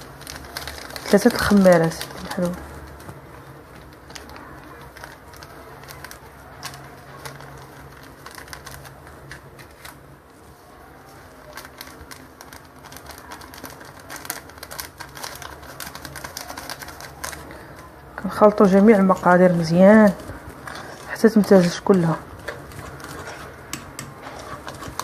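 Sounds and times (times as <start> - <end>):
utensil scraping a bowl: 20.5 - 25.0.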